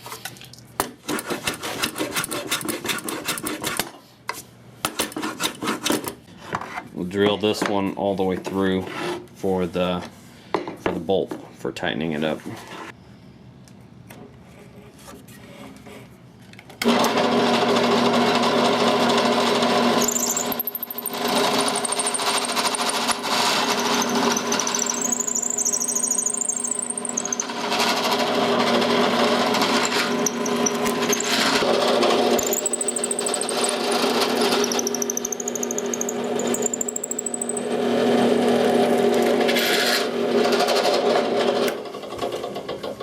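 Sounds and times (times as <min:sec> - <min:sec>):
electric drill boring wood: 0:16.8 - 0:41.6
drill bit squealing: 0:19.9 - 0:28.0, 0:29.6 - 0:31.7, 0:32.3 - 0:37.8.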